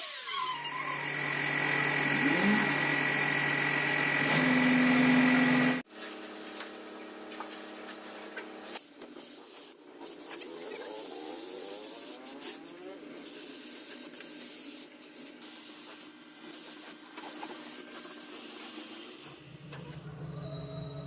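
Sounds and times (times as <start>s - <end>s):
paint spray gun hissing: 0.9s - 5.8s.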